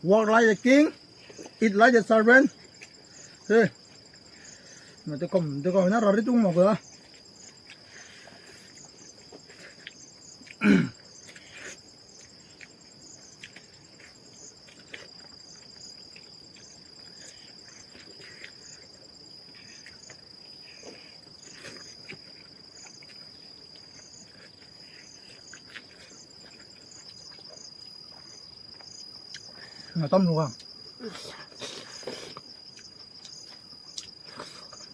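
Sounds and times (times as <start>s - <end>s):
insects chirping: 0.0s - 34.9s
short loud voice or cough: 10.6s - 11.0s.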